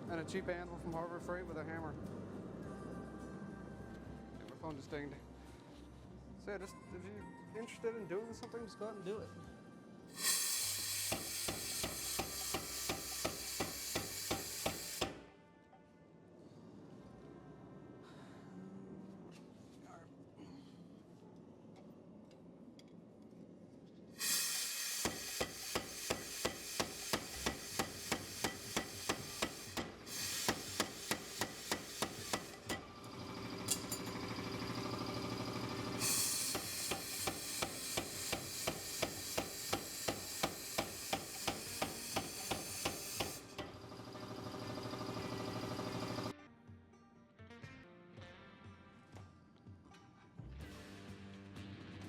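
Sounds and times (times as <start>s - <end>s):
steady hiss: 10.2s - 15.2s, 24.2s - 33.0s, 36.0s - 43.7s
hammer striking steel on anvil: 10.2s - 15.3s, 24.2s - 34.3s, 36.0s - 44.0s.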